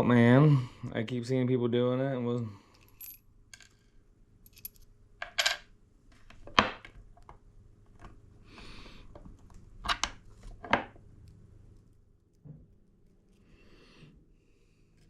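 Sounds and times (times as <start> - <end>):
small metal parts clinking: 2.7 - 5.6.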